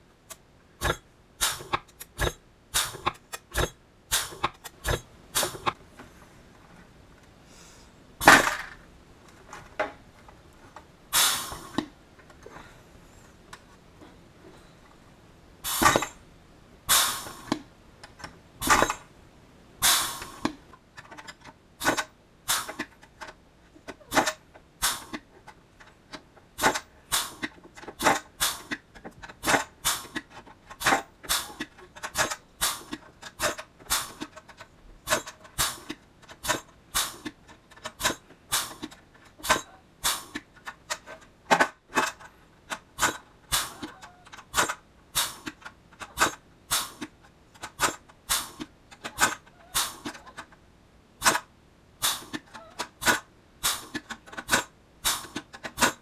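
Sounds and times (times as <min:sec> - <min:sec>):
pneumatic rivet squeezer clacking: 0:00.8 - 0:05.8, 0:11.2 - 0:11.8, 0:15.7 - 0:16.2, 0:16.9 - 0:17.6, 0:19.8 - 0:20.5, 0:21.8 - 0:23.0, 0:24.1 - 0:25.2, 0:26.6 - 0:50.4, 0:51.2 - 0:56.0
short air hiss: 0:00.8 - 0:05.8, 0:11.1 - 0:11.8, 0:15.6 - 0:16.2, 0:16.9 - 0:17.6, 0:19.8 - 0:20.6, 0:21.8 - 0:22.8, 0:24.8 - 0:25.2, 0:26.6 - 0:28.8, 0:29.4 - 0:30.2, 0:30.8 - 0:31.6, 0:32.2 - 0:34.2, 0:35.1 - 0:37.3, 0:38.0 - 0:40.4, 0:43.0 - 0:43.8, 0:44.6 - 0:45.6, 0:46.2 - 0:47.1, 0:47.8 - 0:50.1, 0:52.0 - 0:52.4, 0:53.0 - 0:56.0.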